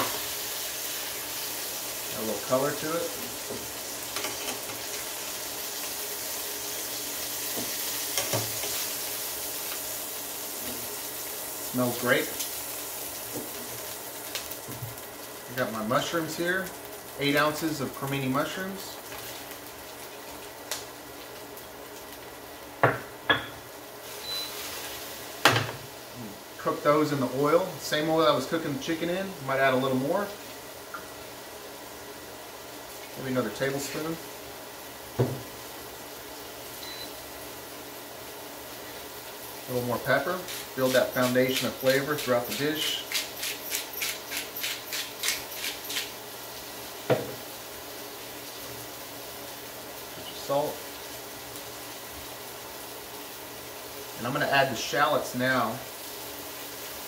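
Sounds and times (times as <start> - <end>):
oil sizzling in a frying pan: 0.0 - 57.0
pepper mill grinding: 40.4 - 46.2.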